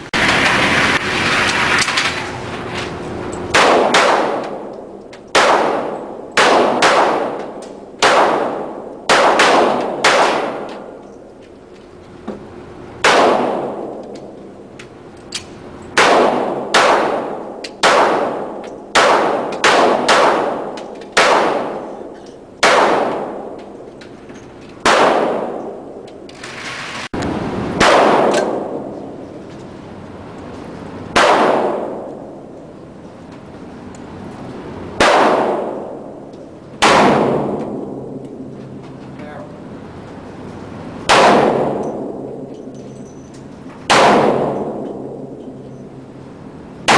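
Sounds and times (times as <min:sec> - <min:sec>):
echoing gunshots: 0:03.5 - 0:11.0, 0:13.0 - 0:14.4, 0:16.0 - 0:23.9, 0:24.8 - 0:26.0, 0:27.2 - 0:29.3, 0:31.1 - 0:32.5, 0:35.0 - 0:38.5, 0:41.0 - 0:42.8, 0:43.8 - 0:46.0.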